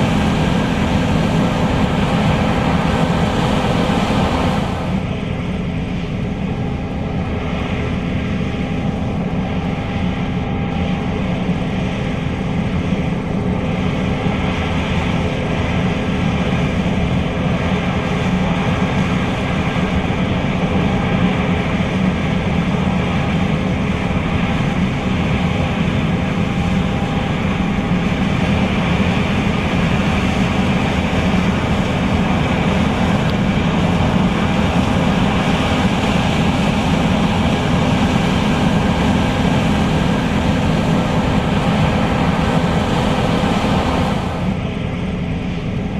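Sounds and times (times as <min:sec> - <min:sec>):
combine harvester drone: 0:00.0 - 0:45.9.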